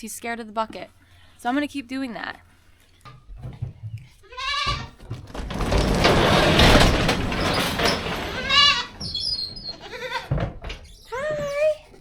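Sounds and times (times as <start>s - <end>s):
loud rustling and scuffling: 3.1s - 12.0s
goats bleating: 4.2s - 5.0s.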